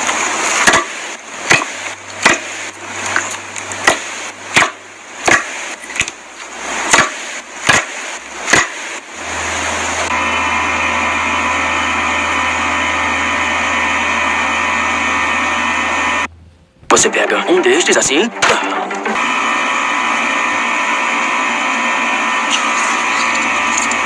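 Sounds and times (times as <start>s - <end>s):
steady hiss: 0.0s - 18.4s
low hum: 0.0s - 24.0s.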